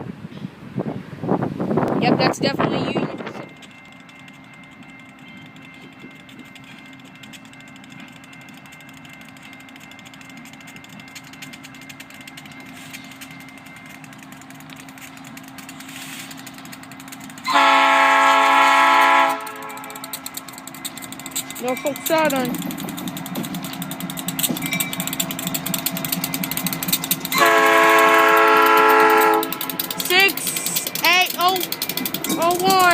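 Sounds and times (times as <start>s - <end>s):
passing train hum: 0.0s - 32.9s
locomotive air horn blast: 17.4s - 20.1s, 27.3s - 29.6s.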